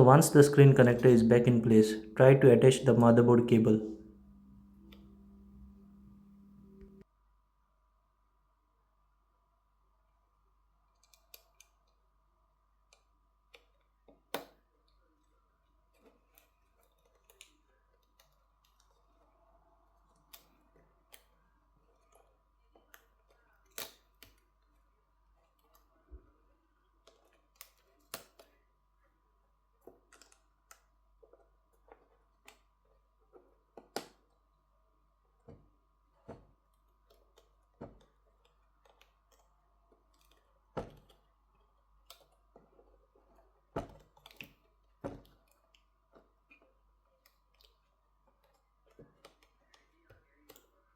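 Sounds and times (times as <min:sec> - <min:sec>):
faint steady hum: 0:00.0 - 0:10.9
small clicks and taps of tools: 0:29.8 - 0:32.7, 0:35.4 - 0:50.7.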